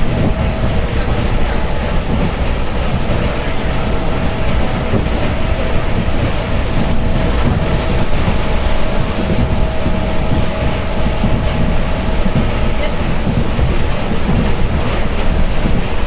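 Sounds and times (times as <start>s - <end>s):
thin steady whine: 0.0s - 15.4s
train wheels rumbling on rails: 0.0s - 16.0s.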